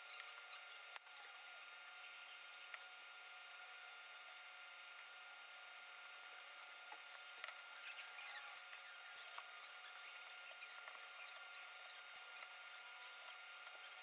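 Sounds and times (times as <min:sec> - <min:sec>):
light scratching of small parts: 0:06.2 - 0:14.0.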